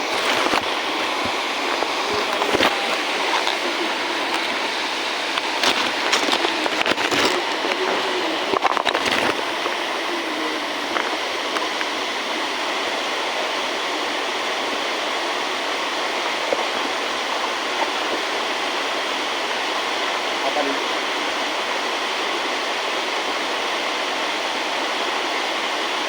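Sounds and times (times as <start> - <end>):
rushing water: 0.0 - 26.0.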